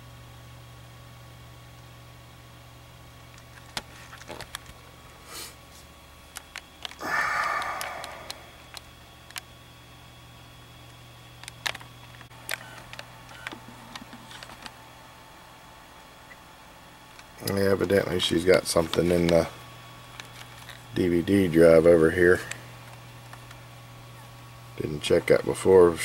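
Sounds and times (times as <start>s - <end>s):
low steady hum: 0.0s - 26.0s
breathy rush: 7.0s - 8.7s.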